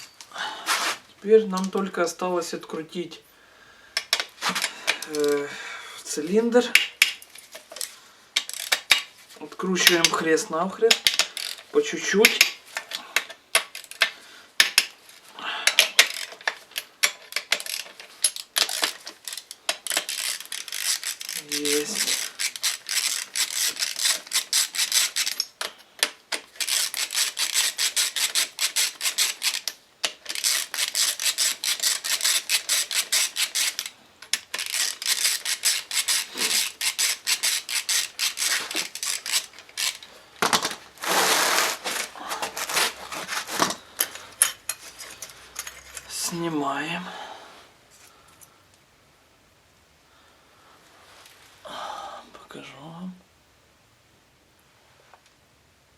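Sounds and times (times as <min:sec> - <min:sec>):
ratchet wrench clicking: 0:06.7 - 0:09.1, 0:10.9 - 0:14.9, 0:15.6 - 0:40.1.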